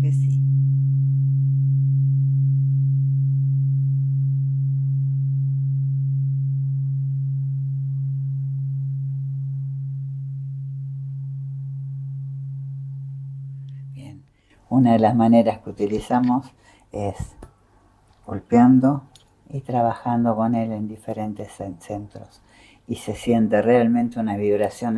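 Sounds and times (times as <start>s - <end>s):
tuning fork ringing: 0.4s - 14.1s.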